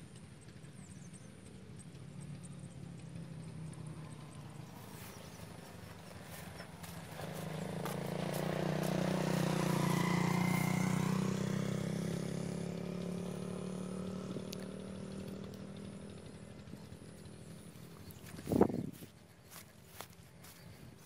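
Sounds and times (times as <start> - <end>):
engine humming: 0.0 - 21.0.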